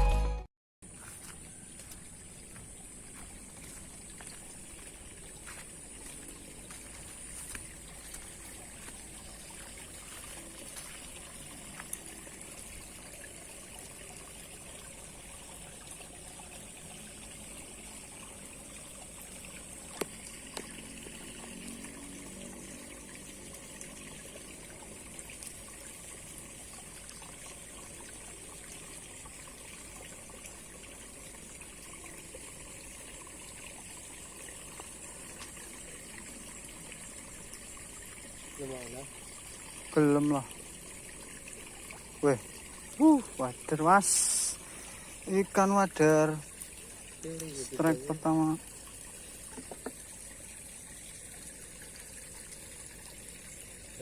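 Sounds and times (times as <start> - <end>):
river water flowing: 1.0 - 54.0
steady high hiss: 43.0 - 48.6.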